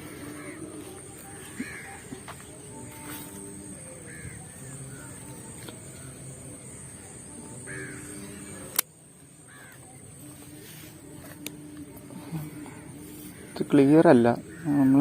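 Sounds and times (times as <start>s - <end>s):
crows cawing: 0.0s - 2.4s, 3.6s - 6.9s, 7.6s - 8.7s, 9.4s - 10.0s, 12.5s - 15.0s
outdoor background noise: 0.0s - 15.0s
sharp click: 8.7s - 8.9s.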